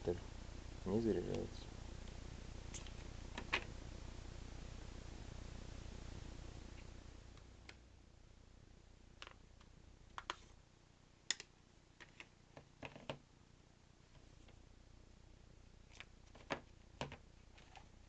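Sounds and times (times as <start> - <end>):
small clicks and taps: 9.2 - 10.4, 11.3 - 13.2.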